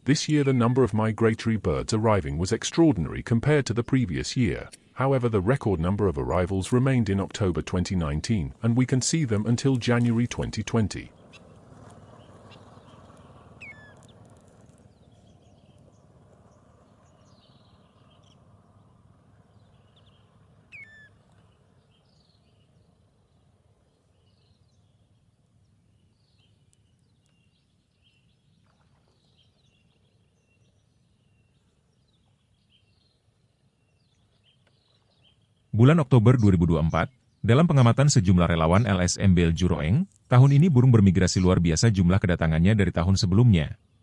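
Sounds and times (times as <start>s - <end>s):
water birds chirping: 0.0s - 44.0s
down-slurred bird calls: 5.4s - 23.0s.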